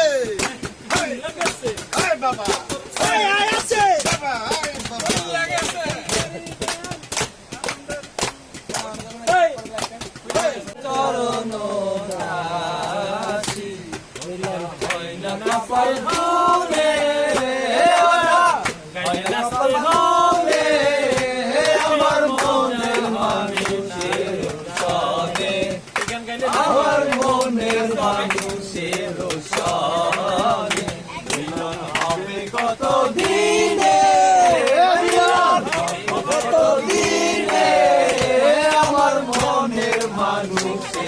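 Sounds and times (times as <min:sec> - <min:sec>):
men singing together: 0:00.0 - 0:41.0
sharp beats: 0:00.0 - 0:41.0.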